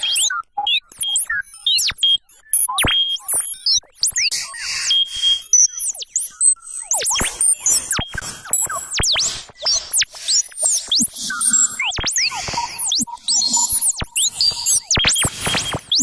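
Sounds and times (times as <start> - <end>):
sharp synth clicks: 6.9 - 16.0.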